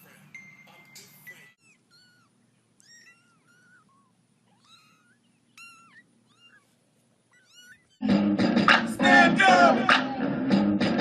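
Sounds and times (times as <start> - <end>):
cat meowing faintly: 1.4 - 8.0.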